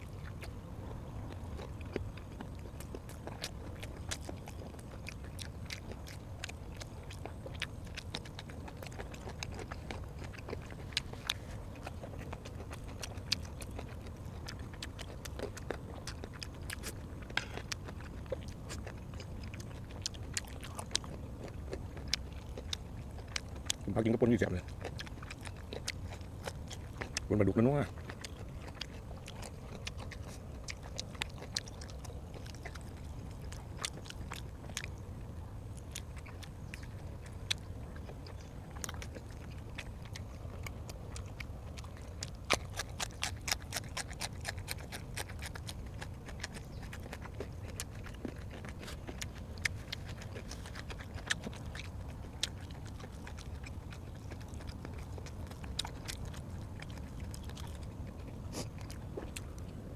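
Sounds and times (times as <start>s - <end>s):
person chewing and crunching food: 0.0s - 59.9s
steady low hum: 0.0s - 59.9s.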